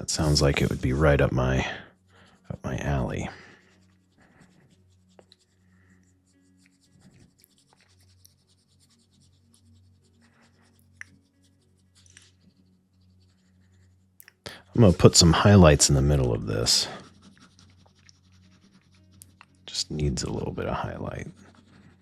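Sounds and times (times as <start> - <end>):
steady low hum: 0.0 - 1.9
pencil scratching on paper: 0.0 - 22.0
small ticks: 18.9 - 19.6.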